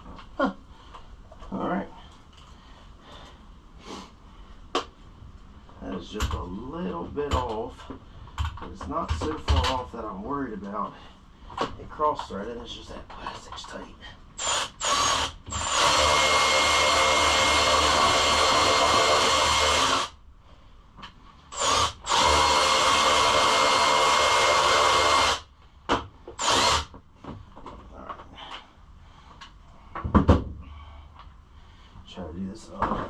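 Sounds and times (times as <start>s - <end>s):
cordless drill running: 14.4s - 20.2s, 21.5s - 25.5s, 26.4s - 26.9s.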